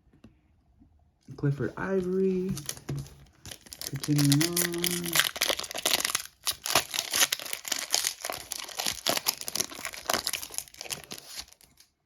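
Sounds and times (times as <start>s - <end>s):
plastic packaging crinkling: 1.9s - 11.9s
packaging tearing: 2.5s - 11.9s.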